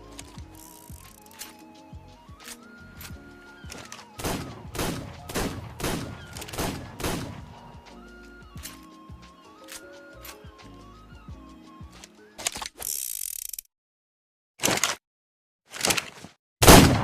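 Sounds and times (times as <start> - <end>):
background music: 0.0 - 12.7.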